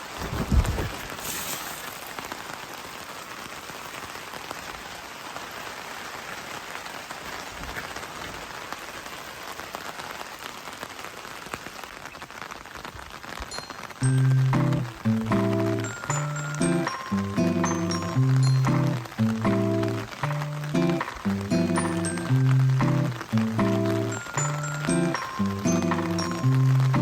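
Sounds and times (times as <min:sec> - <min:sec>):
rain pattering: 0:00.0 - 0:27.0
music: 0:14.0 - 0:27.0.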